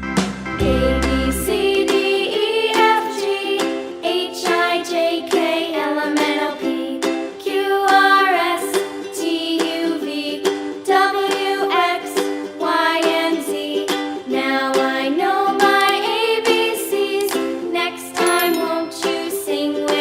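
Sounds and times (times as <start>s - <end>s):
strummed ukulele: 0.5s - 20.0s
melodic sung line: 18.2s - 20.0s.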